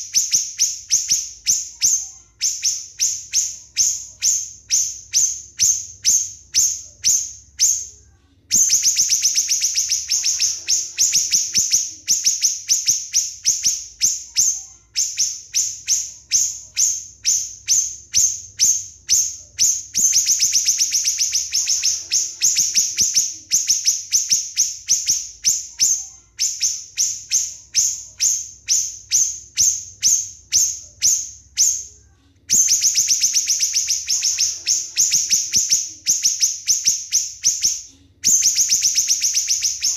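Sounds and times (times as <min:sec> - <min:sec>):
songbird high-pitched chirps: 0:00.0 - 0:39.9
bird fast trills: 0:08.6 - 0:31.9, 0:32.5 - 0:39.9.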